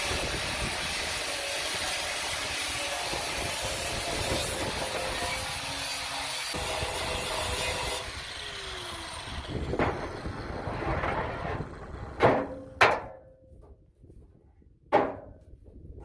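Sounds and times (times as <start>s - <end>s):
grinder spinning down whine: 0.0s - 12.2s.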